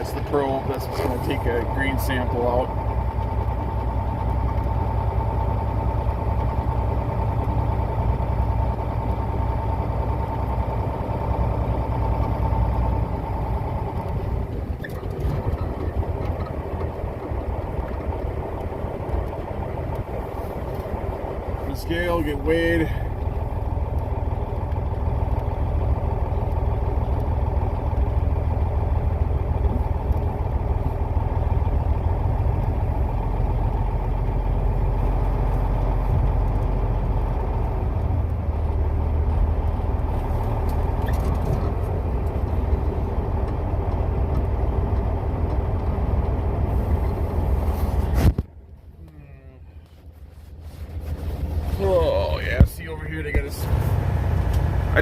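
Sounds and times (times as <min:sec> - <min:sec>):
diesel truck engine running: 0:00.0 - 0:55.0.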